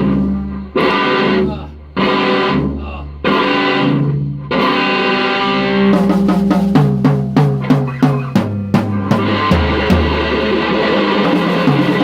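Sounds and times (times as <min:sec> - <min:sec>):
distorted electric guitar chords: 0:00.0 - 0:12.0
drum kit: 0:05.8 - 0:12.0.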